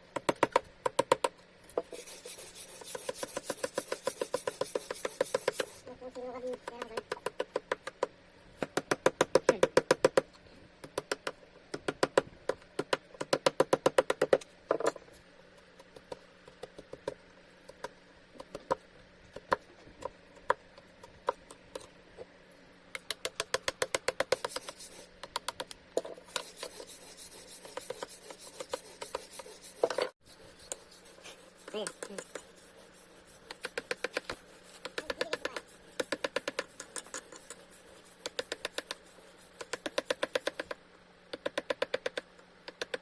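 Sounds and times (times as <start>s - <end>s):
rapid small clicks: 33.4s - 43.0s.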